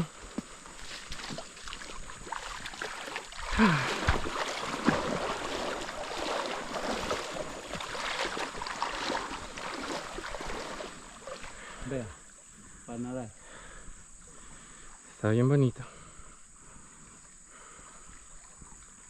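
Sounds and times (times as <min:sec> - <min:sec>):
creek splashing over rocks: 0:00.0 - 0:12.5.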